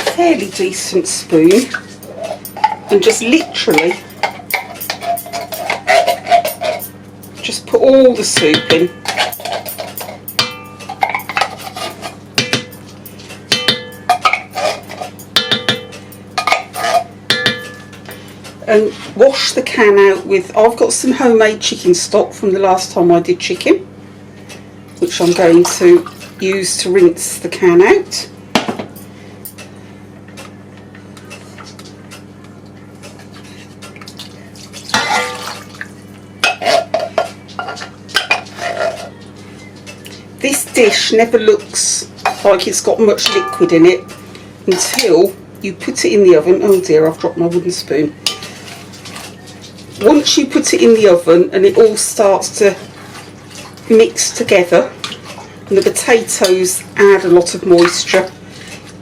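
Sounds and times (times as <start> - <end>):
low steady hum: 0.0 - 59.0
spoon scraping: 1.5 - 7.5, 8.7 - 17.9, 36.4 - 41.2
metal can and spoon clinking: 43.2 - 44.2.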